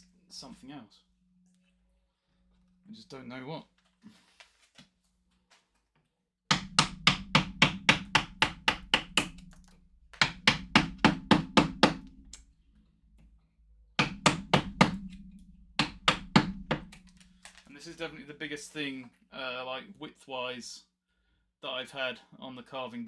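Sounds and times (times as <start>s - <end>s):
mallet striking chisel into wood: 6.5s - 12.2s, 14.0s - 17.6s.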